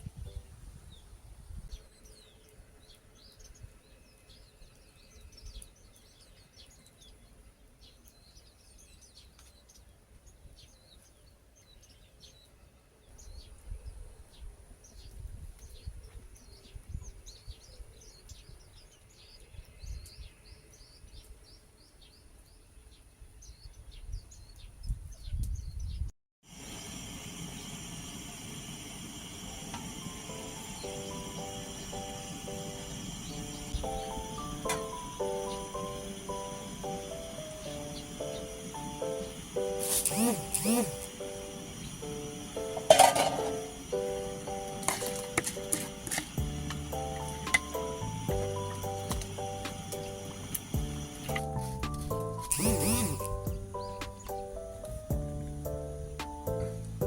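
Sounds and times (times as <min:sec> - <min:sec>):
small birds chirping: 0:00.0 - 0:26.1, 0:27.5 - 0:57.0
low wind rumbles: 0:26.8 - 0:39.8.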